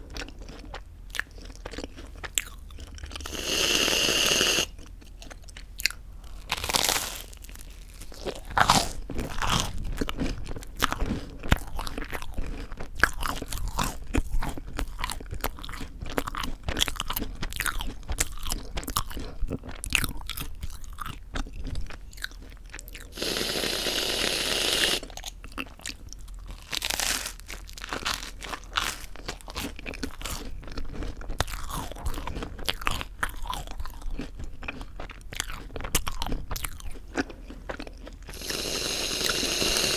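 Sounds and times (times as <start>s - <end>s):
chewing crisp toasted bread: 0.0s - 39.9s
whipped cream spraying from can: 23.2s - 25.0s, 38.3s - 39.9s.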